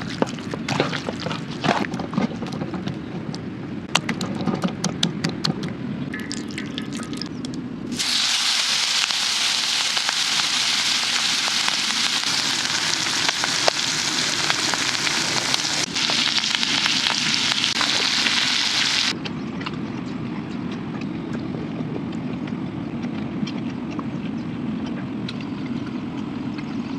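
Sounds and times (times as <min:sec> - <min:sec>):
chicken sizzling on a hot pan: 0:08.0 - 0:19.1
faint crackles: 0:08.0 - 0:19.1.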